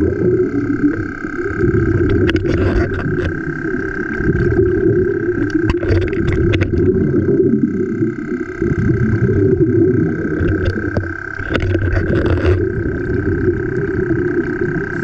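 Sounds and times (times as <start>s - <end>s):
motor droning with whine: 0.0s - 15.0s
scattered clicks: 5.4s - 7.0s.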